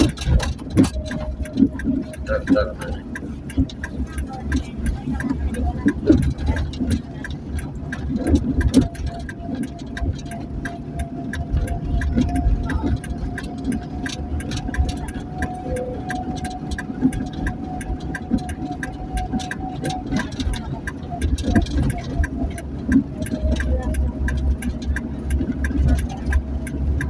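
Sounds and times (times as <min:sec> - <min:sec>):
engine and road rumble: 0:00.0 - 0:27.0
fast ticking: 0:00.0 - 0:27.0.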